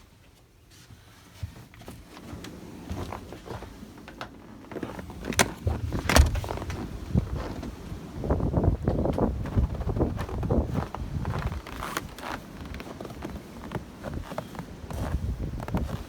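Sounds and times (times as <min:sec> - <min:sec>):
door clicks and knocks: 0:05.2 - 0:06.8
wind buffeting microphone: 0:05.2 - 0:12.2, 0:14.0 - 0:16.0.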